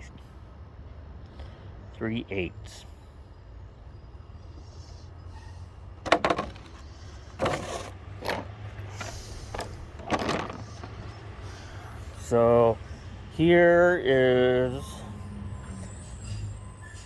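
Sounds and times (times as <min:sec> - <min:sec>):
metal tools clattering: 0:07.4 - 0:11.1.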